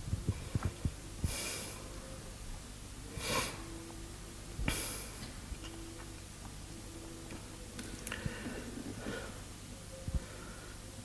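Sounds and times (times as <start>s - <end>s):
man sniffing breaths: 3.1s - 3.7s.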